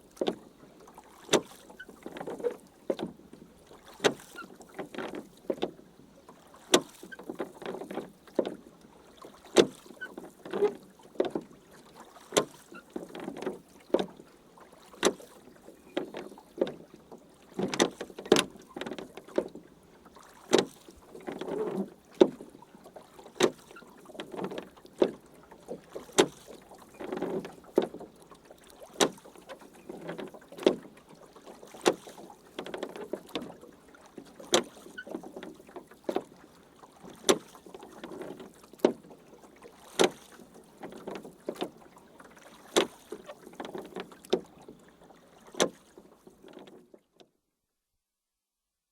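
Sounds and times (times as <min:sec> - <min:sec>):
oar strokes splashing water: 0:00.0 - 0:47.4
oar knocking: 0:37.1 - 0:39.0.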